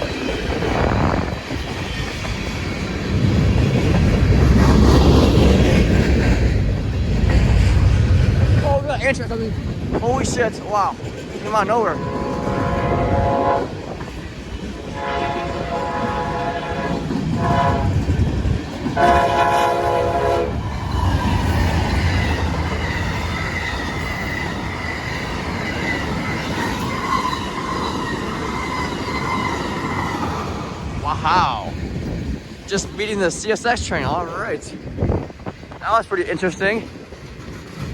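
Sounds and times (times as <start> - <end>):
train wheels clickety-clack: 0.0 - 30.9, 31.5 - 37.9
train horn blasts: 12.0 - 13.8, 14.9 - 18.0, 19.0 - 20.6.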